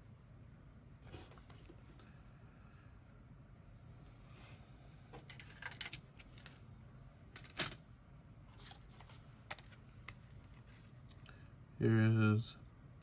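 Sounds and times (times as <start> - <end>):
packaging clicks and rustles: 8.6 - 11.3.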